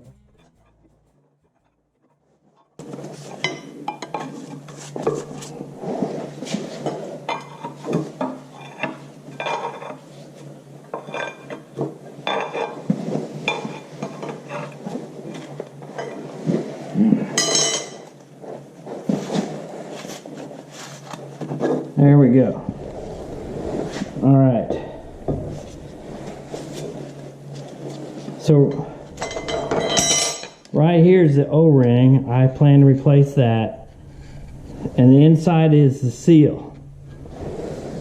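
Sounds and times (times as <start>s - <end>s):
metal tools clinking and scraping: 28.7s - 30.7s.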